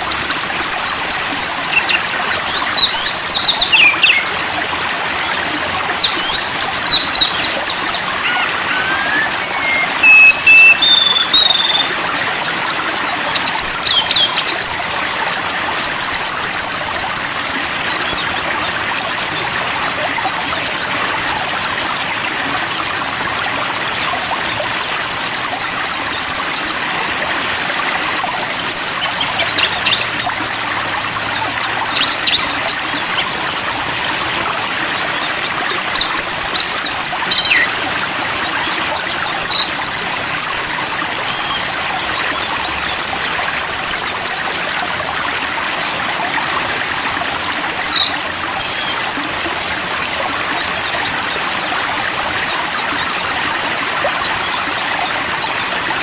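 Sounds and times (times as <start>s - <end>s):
songbird singing: 0.0s - 4.5s, 5.9s - 12.0s, 13.1s - 14.9s, 28.7s - 33.3s
stream water flowing: 0.0s - 56.0s.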